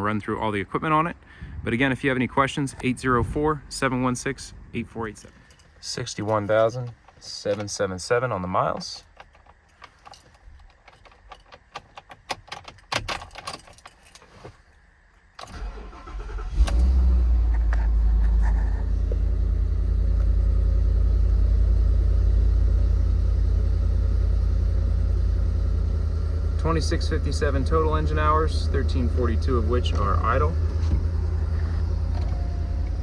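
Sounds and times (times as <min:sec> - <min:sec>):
truck engine cranking and idling: 0:15.4 - 0:33.0.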